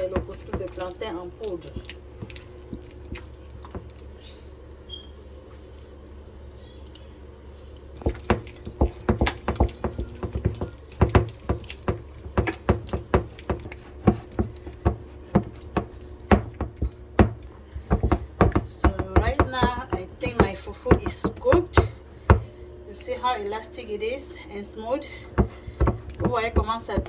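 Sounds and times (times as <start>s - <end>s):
utensil knocking and scraping bowl: 0.0s - 4.0s, 8.0s - 22.5s, 25.0s - 27.0s
low steady hum: 0.0s - 27.0s.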